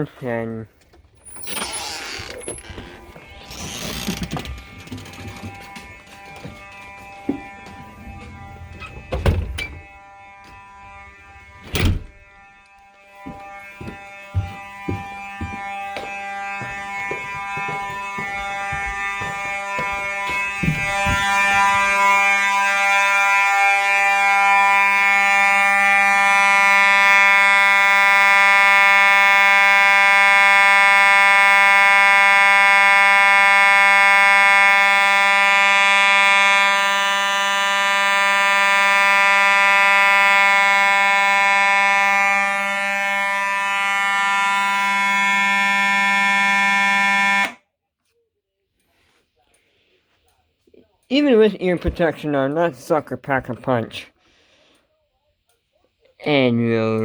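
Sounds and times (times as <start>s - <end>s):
fire alarm steady tone: 1.2s - 47.7s
knocks and thumps: 16.6s - 21.8s.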